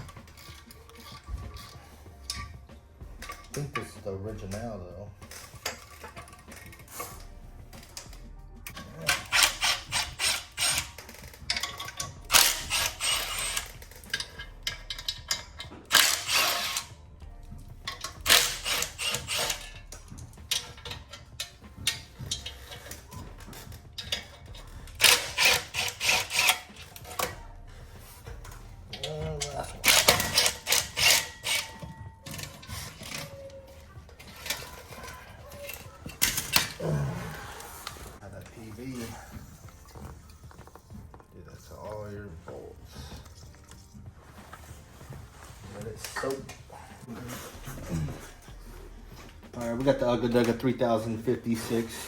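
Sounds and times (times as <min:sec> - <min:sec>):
ratchet wrench clicking: 0:07.8 - 0:17.0, 0:17.9 - 0:27.4, 0:28.1 - 0:36.8.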